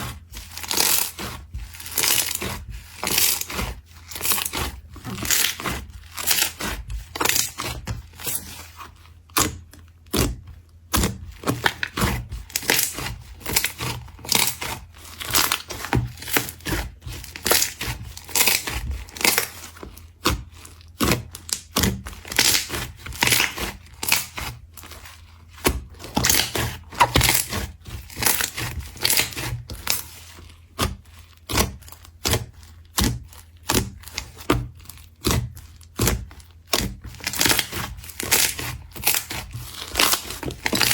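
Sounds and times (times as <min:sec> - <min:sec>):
slime squishing with sticky pops: 0:00.0 - 0:40.9.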